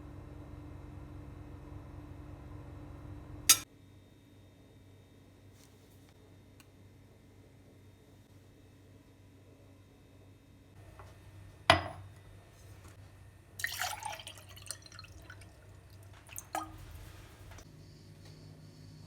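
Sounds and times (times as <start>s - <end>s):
glass clinking: 11.7s - 12.0s
liquid dripping and splashing: 13.6s - 17.6s.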